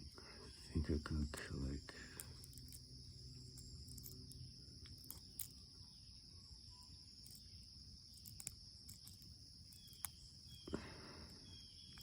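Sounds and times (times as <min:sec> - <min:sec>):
steady high-pitched whine: 0:00.0 - 0:12.0
metallic lock picking clicks: 0:03.5 - 0:05.6, 0:08.1 - 0:10.2.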